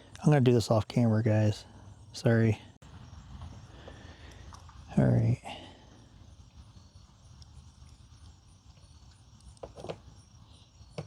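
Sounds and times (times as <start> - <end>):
handling noises on a cable: 9.4 - 10.1.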